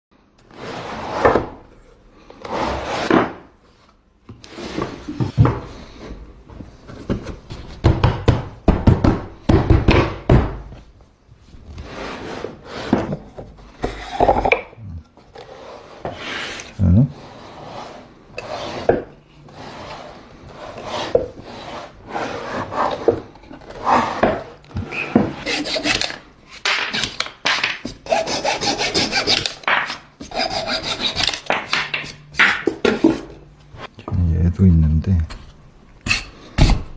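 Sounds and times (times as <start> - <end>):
hand saw rasping wood: 25.3 - 26.1, 27.9 - 29.6, 30.2 - 31.5.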